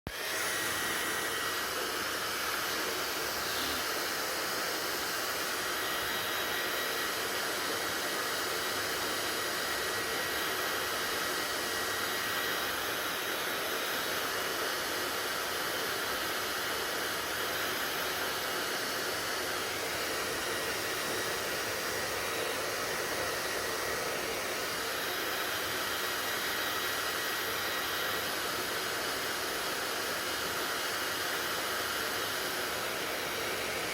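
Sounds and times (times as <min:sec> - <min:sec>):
hair dryer running: 0:00.1 - 0:33.9.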